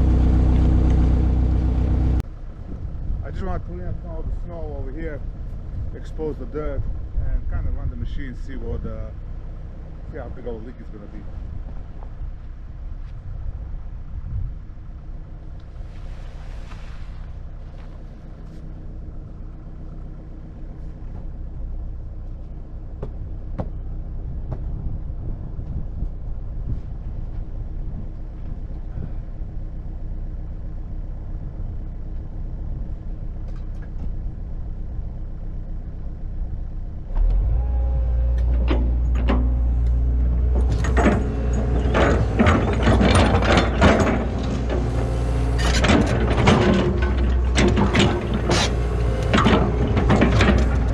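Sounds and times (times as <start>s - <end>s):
excavator diesel engine running: 0.0s - 12.7s, 27.7s - 50.9s
metallic clanks and scrapes: 38.3s - 50.9s.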